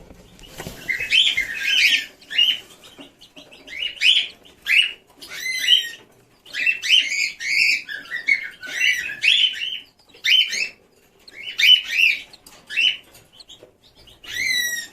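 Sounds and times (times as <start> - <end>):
chicks peeping: 0.0 - 14.9.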